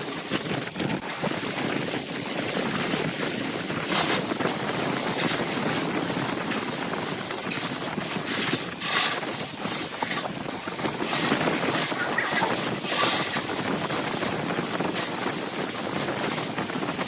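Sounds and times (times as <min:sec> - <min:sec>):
wood lathe tool scraping: 0:07.1 - 0:14.3.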